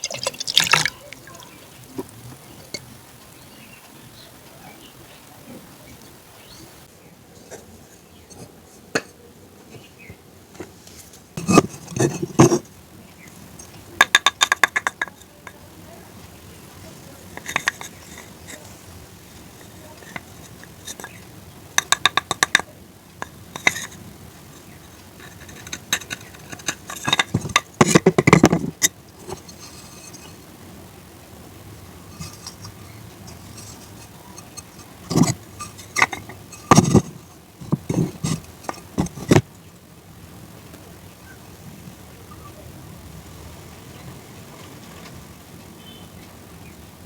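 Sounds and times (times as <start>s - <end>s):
utensil clinking against dish: 13.3s - 15.7s, 16.8s - 21.2s, 21.8s - 30.4s, 32.0s - 39.4s.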